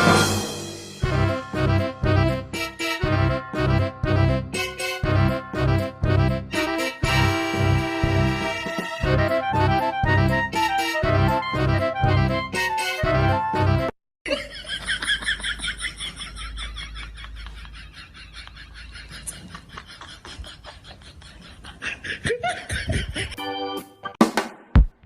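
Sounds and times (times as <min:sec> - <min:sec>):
high-pitched giggling: 0:15.4 - 0:23.4.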